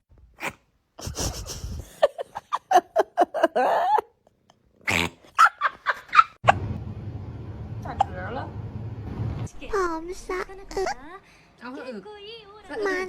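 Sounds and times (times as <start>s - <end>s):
person laughing: 1.0s - 4.3s.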